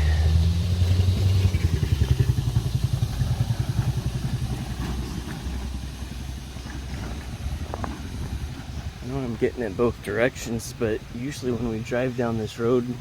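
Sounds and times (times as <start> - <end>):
motor vehicle passing: 0.0 - 9.2.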